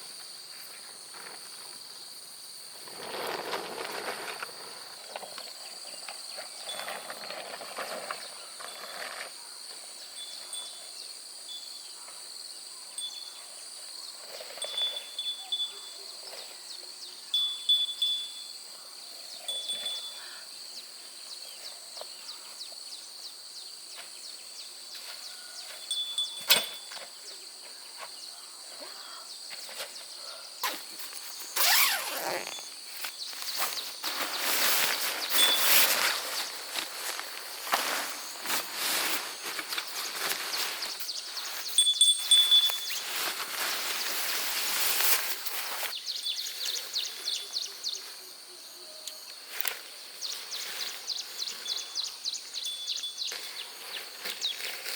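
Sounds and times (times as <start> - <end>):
rustling: 2.8 - 5.5, 30.6 - 47.2
high insect drone: 26.8 - 54.9.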